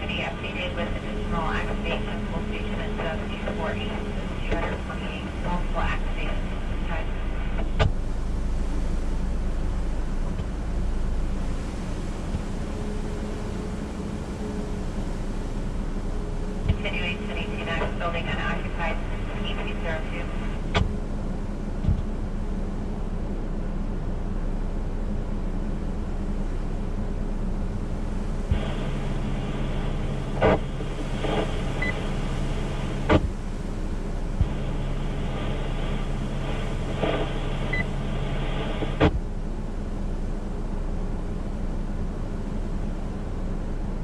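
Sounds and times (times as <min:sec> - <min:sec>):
radio crackles: 0:00.0 - 0:11.0, 0:16.6 - 0:21.0, 0:28.5 - 0:33.4, 0:34.2 - 0:39.2
low steady radio tone: 0:00.0 - 0:44.0
radio transmission clicks: 0:00.2 - 0:08.0, 0:16.7 - 0:21.0, 0:33.0 - 0:33.4, 0:36.6 - 0:37.9, 0:38.6 - 0:39.2.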